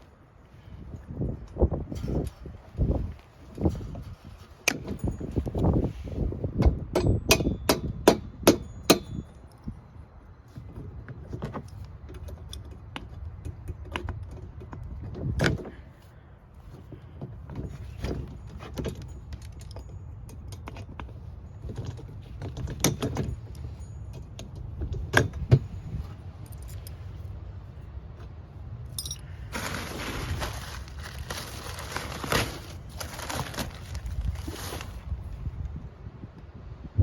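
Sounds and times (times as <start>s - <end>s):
metallic clinks and rattles: 17.6s - 27.1s, 28.8s - 29.7s.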